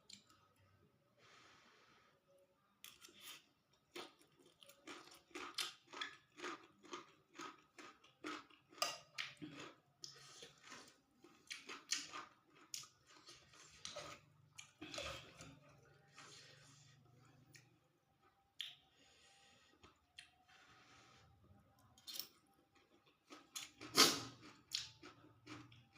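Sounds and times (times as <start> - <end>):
person chewing with wet smacks: 0.0 - 0.7, 2.8 - 16.4, 17.1 - 18.9, 22.1 - 25.9.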